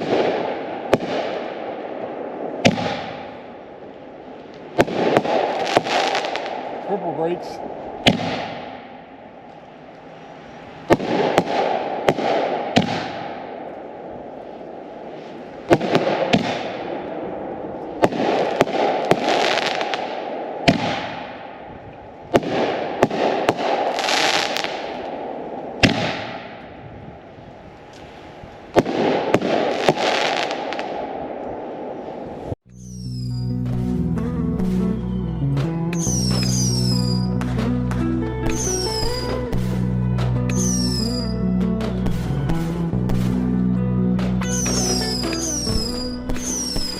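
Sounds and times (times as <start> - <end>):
firework shells booming: 0.0 - 3.7, 4.6 - 6.8, 7.9 - 9.2, 10.8 - 14.2, 15.6 - 26.8, 28.7 - 31.4, 35.9 - 37.7, 44.5 - 46.9.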